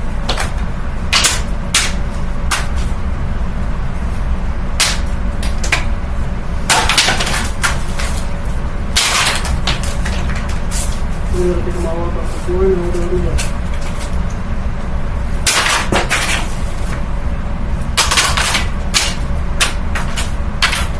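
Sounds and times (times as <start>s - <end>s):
box fan whirring: 0.0s - 20.9s
cards slapping fan blades: 0.2s - 3.0s, 4.7s - 6.0s, 6.6s - 11.2s, 15.4s - 17.1s, 17.9s - 20.9s.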